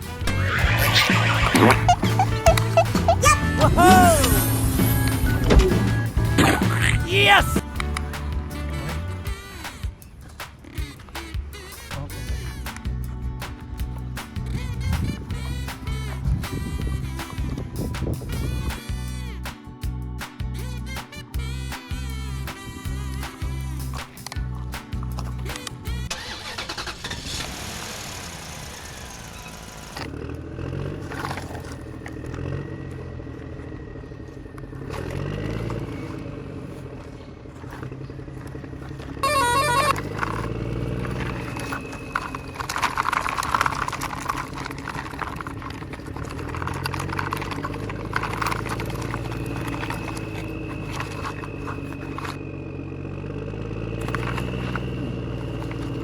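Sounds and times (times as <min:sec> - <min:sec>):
horn honks: 0:00.0 - 0:13.6, 0:14.4 - 0:24.6, 0:25.4 - 0:28.2, 0:38.8 - 0:52.9
vehicle engine revving: 0:00.0 - 0:56.0.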